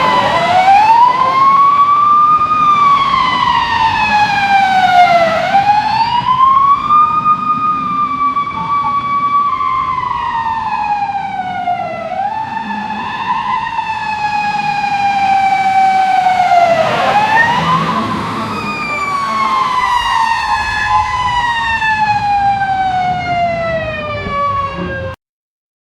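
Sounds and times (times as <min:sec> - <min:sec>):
fire truck siren wailing: 0:00.0 - 0:25.2.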